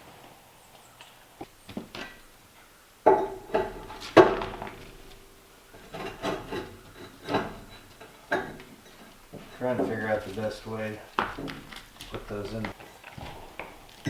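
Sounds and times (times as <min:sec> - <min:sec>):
scraping: 0:00.0 - 0:14.0
brick knocking against metal: 0:03.0 - 0:13.8.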